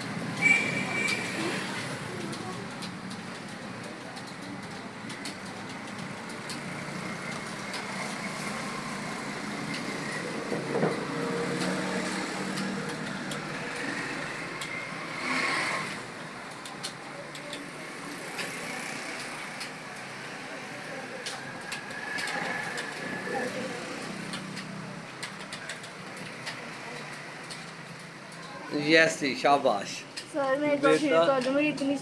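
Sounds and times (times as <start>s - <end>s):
steady background noise: 0.0s - 32.0s
keyboard keys clicking: 9.6s - 14.8s, 16.2s - 17.8s, 21.2s - 28.4s.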